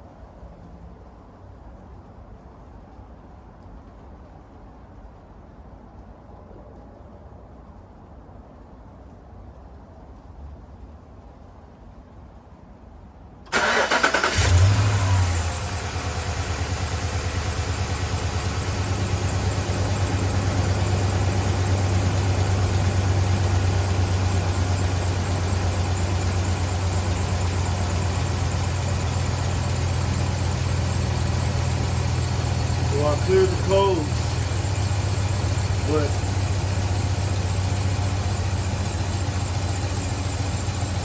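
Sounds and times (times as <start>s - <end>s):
starter motor cranking: 13.5s - 15.2s
car engine revving and idling: 13.6s - 41.0s.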